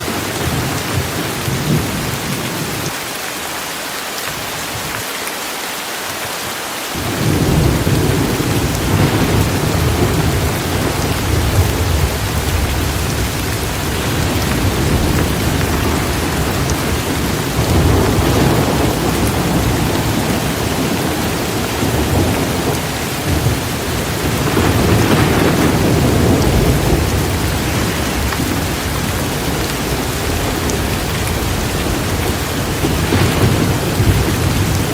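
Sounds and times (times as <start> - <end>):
heavy rain falling: 0.0 - 34.9
rolling thunder: 7.0 - 34.9.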